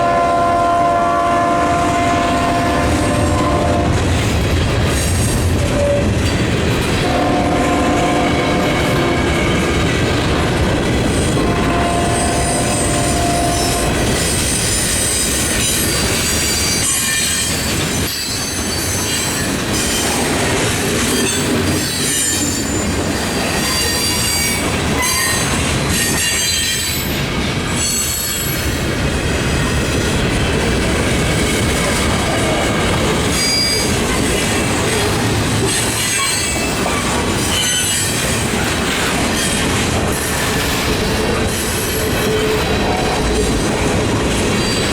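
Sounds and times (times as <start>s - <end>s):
train wheels rumbling: 0.0s - 44.9s
train wheels squealing: 11.1s - 28.8s, 31.6s - 43.5s, 44.5s - 44.9s.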